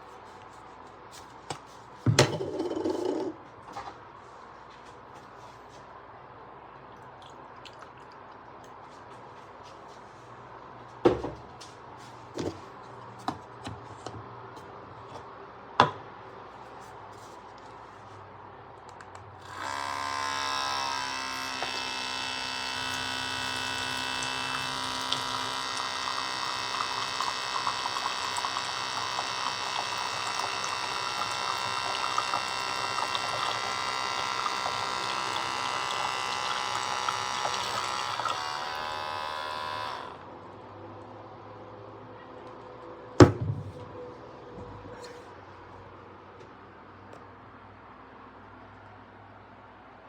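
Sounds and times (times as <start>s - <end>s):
electric pump whining: 19.4s - 40.3s.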